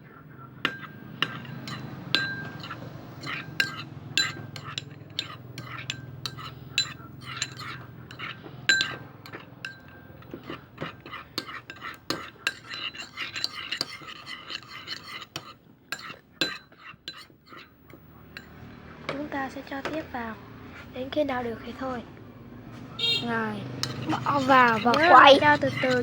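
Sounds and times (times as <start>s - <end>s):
utensil clinking against container: 0.7s - 18.6s, 23.8s - 26.0s
utensil scraping container: 2.4s - 9.5s, 10.2s - 18.0s, 23.7s - 26.0s.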